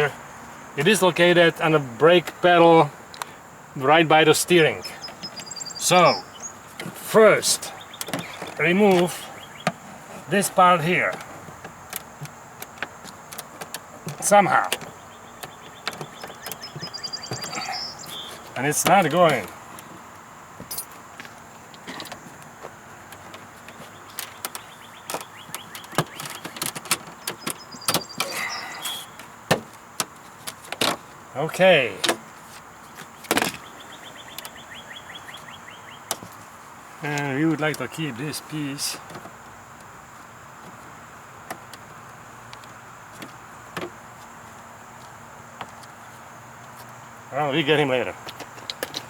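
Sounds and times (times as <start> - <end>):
steady hiss: 0.0 - 24.7.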